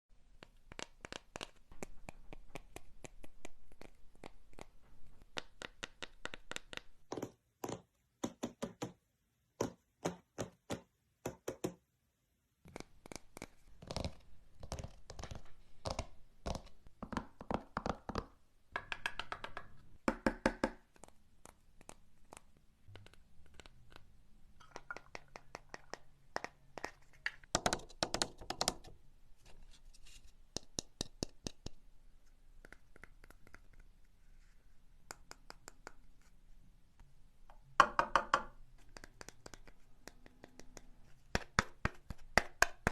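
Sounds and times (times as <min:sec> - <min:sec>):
sharp taps knocks and clicks: 0:04.2 - 0:09.0.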